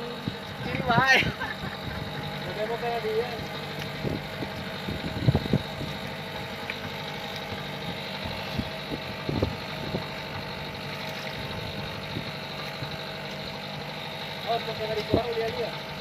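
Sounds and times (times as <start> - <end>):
boat engine idling: 0.0 - 16.0.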